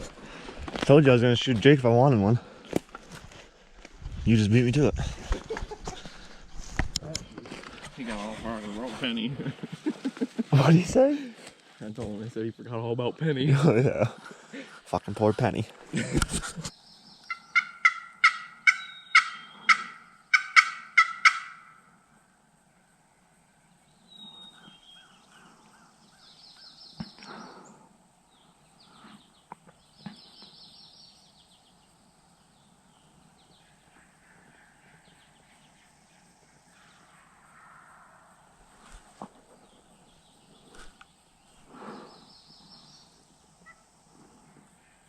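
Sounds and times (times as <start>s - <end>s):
high bird chirps: 16.9s - 20.6s
turkey yelps: 17.3s - 21.8s, 43.6s - 43.9s.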